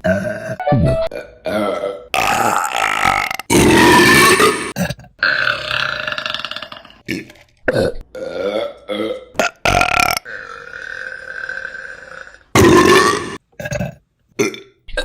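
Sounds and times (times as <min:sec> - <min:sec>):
woman burping: 0:00.0 - 0:06.6.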